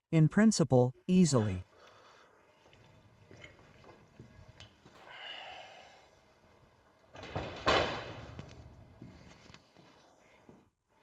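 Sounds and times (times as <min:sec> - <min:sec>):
gate closing with loud bang: 0:07.2 - 0:08.4.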